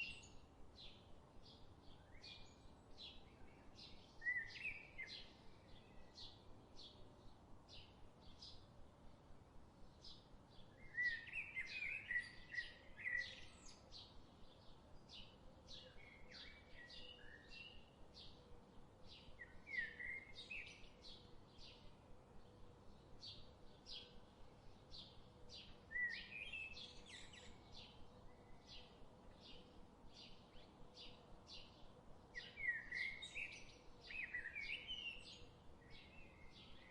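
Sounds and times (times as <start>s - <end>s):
bird warbling song: 1.9s - 6.4s, 10.0s - 18.4s, 19.1s - 21.9s, 24.9s - 36.9s.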